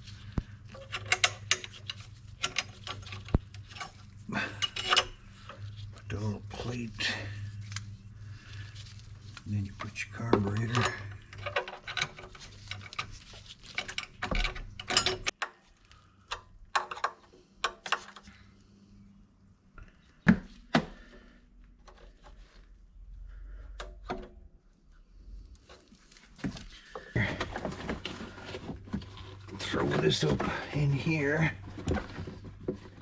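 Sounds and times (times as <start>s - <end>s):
metal parts clinking: 10.5s - 15.3s.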